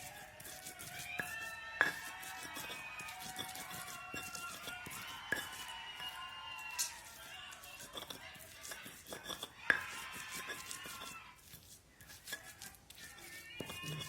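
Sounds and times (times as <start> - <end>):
spices ground by hand: 0.0 - 14.0.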